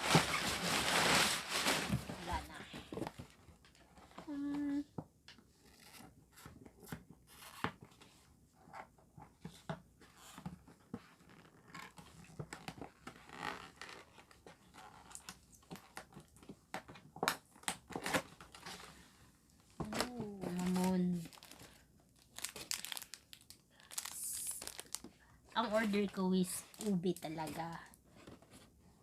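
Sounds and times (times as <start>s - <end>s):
plastic packaging crinkling: 0.0s - 3.4s, 19.6s - 28.0s.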